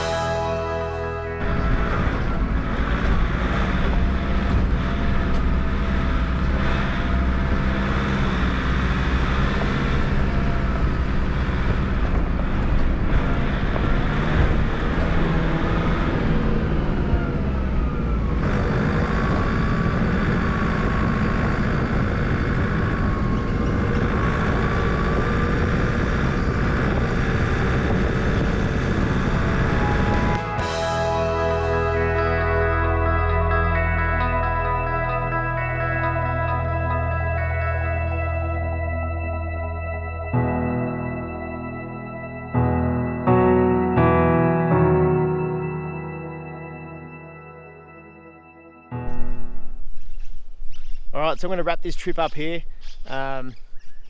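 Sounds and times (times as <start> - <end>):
vehicle engine and road noise: 0.0 - 43.9.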